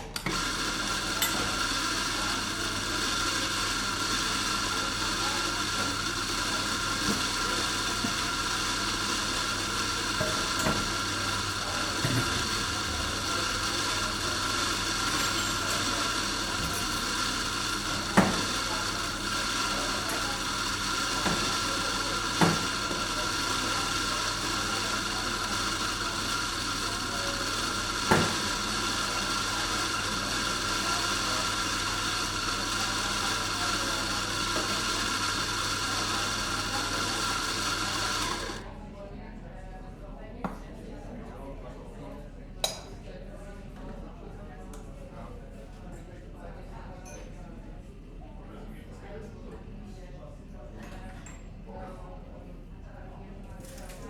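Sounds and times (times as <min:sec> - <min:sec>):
kitchen machinery hiss and hum: 0:00.0 - 0:40.6.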